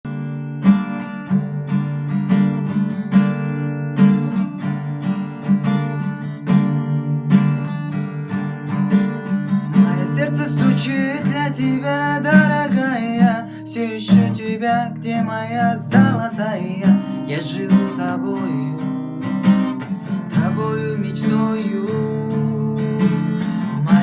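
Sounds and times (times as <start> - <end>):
acoustic guitar strumming: 0.1 - 24.0
person singing: 9.7 - 19.4, 20.2 - 24.0.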